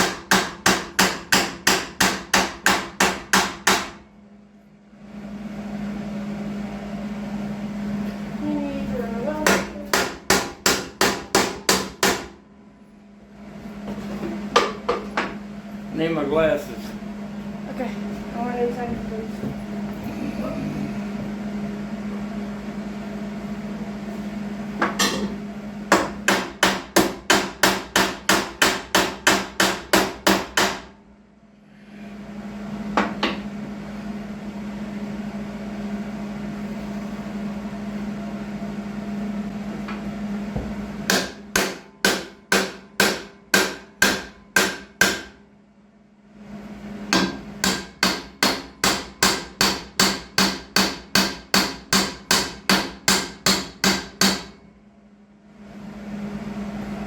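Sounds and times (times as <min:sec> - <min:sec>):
hammer striking metal: 0:00.0 - 0:04.0, 0:09.4 - 0:12.4, 0:24.8 - 0:25.3, 0:25.9 - 0:30.9, 0:41.1 - 0:45.4, 0:47.1 - 0:54.6
steady hum: 0:00.0 - 0:57.0.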